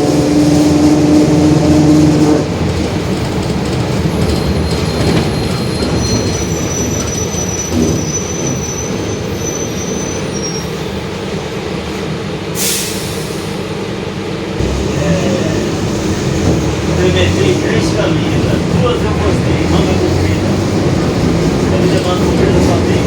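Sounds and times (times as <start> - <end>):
bus engine rumble: 0.0 - 23.0
road noise: 0.0 - 23.0
faint high squeals: 4.2 - 11.0
differential growl: 14.6 - 21.9.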